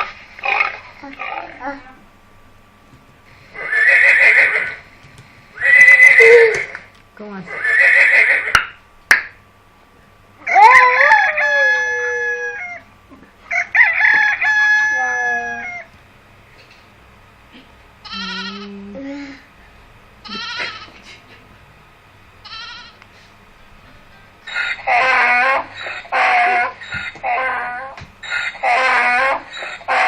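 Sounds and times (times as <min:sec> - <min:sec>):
rooster crowing: 0:05.6 - 0:06.5, 0:10.4 - 0:12.9, 0:13.5 - 0:15.9, 0:24.5 - 0:27.6, 0:28.2 - 0:30.0
short wavering calls: 0:05.6 - 0:06.6.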